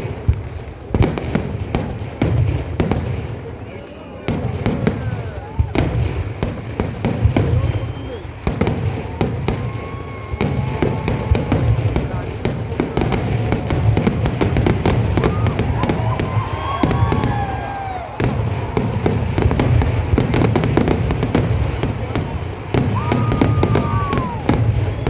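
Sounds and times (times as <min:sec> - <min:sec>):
firecrackers crackling: 0:00.0 - 0:25.0
whistling firework falling in pitch: 0:07.2 - 0:12.2, 0:13.1 - 0:25.0.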